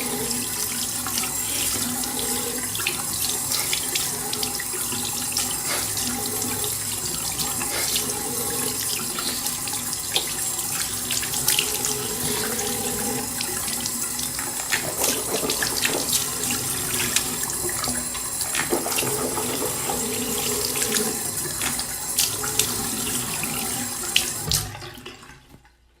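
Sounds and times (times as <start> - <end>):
tap running into sink: 0.0 - 25.1
small splashes and clicks: 21.6 - 22.8.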